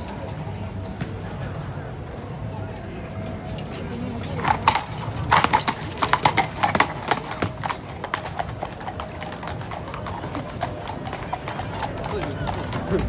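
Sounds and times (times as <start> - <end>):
horse hooves clip-clopping: 3.0 - 13.0.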